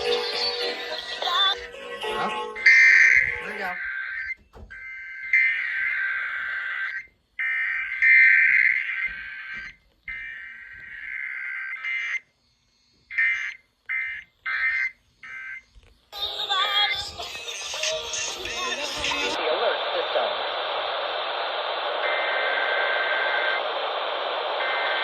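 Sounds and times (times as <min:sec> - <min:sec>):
radio music: 0:00.0 - 0:12.3, 0:13.1 - 0:25.0
harsh two-tone data bursts: 0:02.6 - 0:12.3
radio speech: 0:03.2 - 0:04.0, 0:17.8 - 0:25.0.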